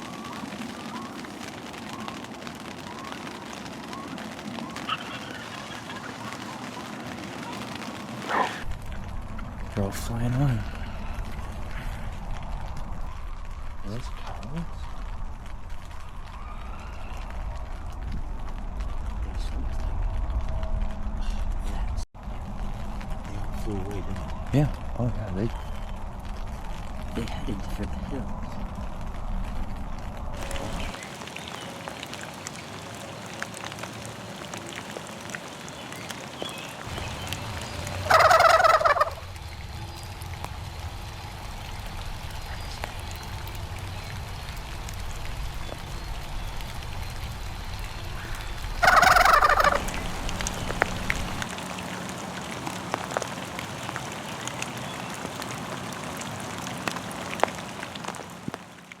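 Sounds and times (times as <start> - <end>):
turkey gobbling: 4.6 - 7.6, 37.8 - 39.2, 48.3 - 51.4.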